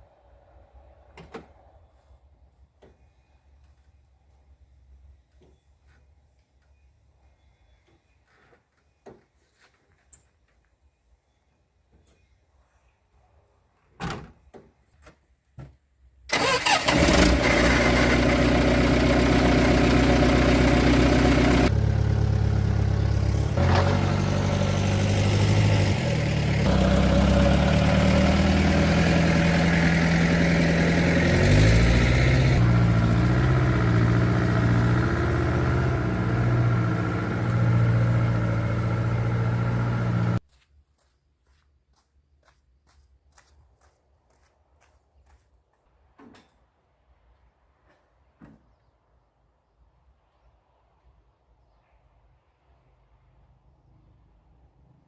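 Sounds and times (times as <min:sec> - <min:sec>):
truck engine running: 0:16.3 - 0:40.4.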